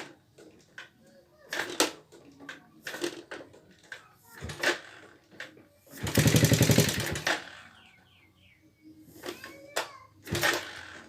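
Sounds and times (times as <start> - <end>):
motorcycle engine rattling: 4.3 - 8.3, 10.2 - 11.0.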